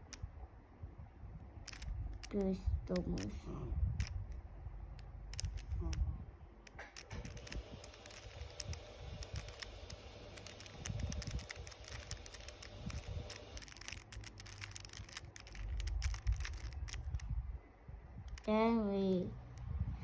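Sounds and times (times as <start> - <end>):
plastic puzzle cube clicking: 0.0 - 0.2, 1.6 - 3.4, 4.0 - 4.4, 5.0 - 6.0, 6.7 - 17.3, 18.3 - 18.5
hands gripping rumbles: 6.7 - 17.3.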